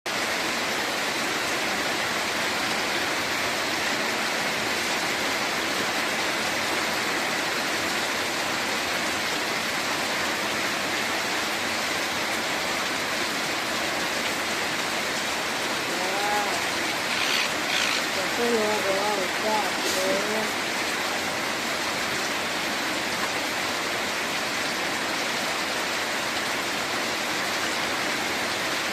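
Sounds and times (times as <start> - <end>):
short pitched voice-like sounds: 15.8 - 20.6.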